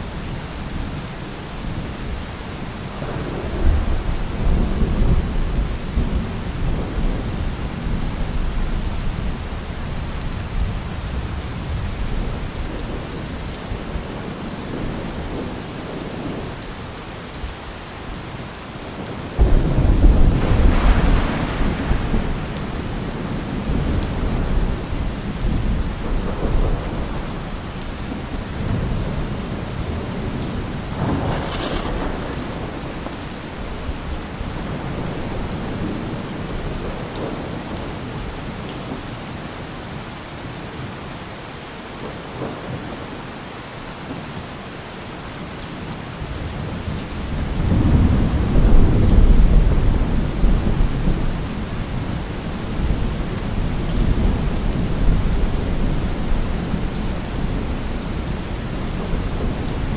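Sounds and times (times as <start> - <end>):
steady rain: 0.0 - 59.9
thunder rumbling: 19.0 - 38.3, 46.6 - 59.9
sharp thunderclap: 19.4 - 24.8, 31.0 - 33.8.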